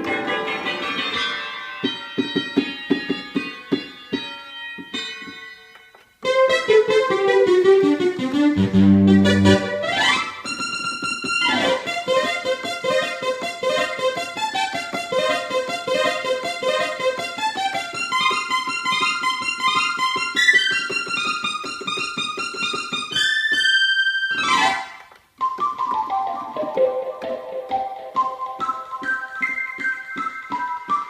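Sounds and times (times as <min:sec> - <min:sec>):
synthesizer rapid repeated notes: 0:08.5 - 0:10.0
synthesizer downward sweep: 0:08.5 - 0:10.2.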